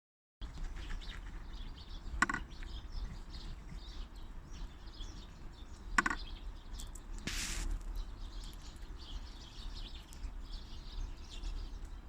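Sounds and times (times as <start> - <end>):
birds chirping faintly: 0.4 - 12.0.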